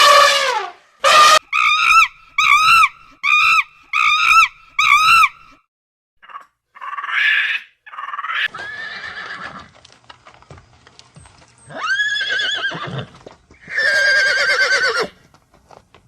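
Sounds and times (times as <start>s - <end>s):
horse whinnying: 8.2s - 9.7s, 11.7s - 15.2s.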